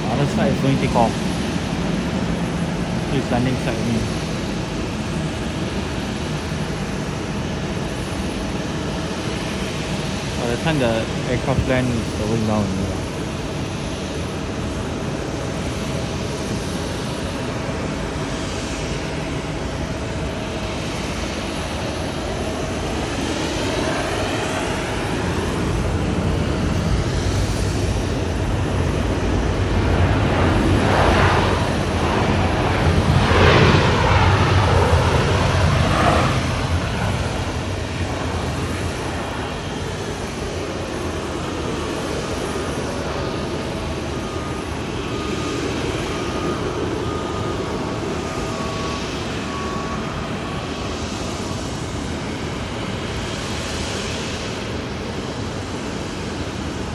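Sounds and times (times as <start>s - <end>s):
airliner engines passing: 0.0s - 56.9s.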